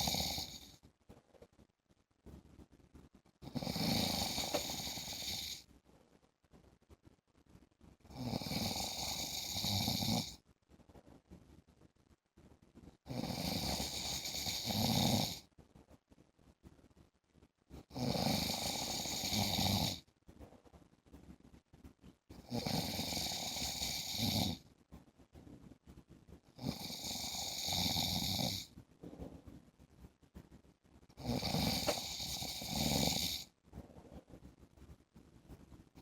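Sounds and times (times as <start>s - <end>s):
man snoring: 0.0s - 0.6s, 3.4s - 5.6s, 8.1s - 10.4s, 13.1s - 15.4s, 17.9s - 20.0s, 22.4s - 24.6s, 26.6s - 28.7s, 31.2s - 33.5s.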